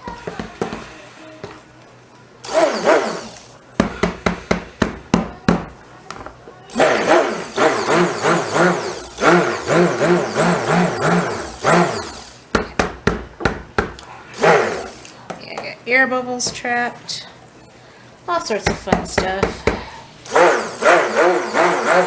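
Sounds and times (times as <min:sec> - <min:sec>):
stick blender running: 0:02.4 - 0:03.6, 0:06.7 - 0:12.5, 0:14.3 - 0:15.2, 0:20.2 - 0:22.0.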